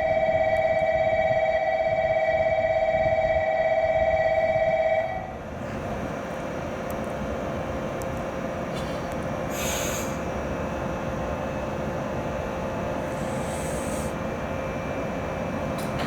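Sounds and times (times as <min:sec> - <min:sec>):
electric train humming: 0:00.0 - 0:16.0
short hisses: 0:08.8 - 0:10.2, 0:13.1 - 0:14.2.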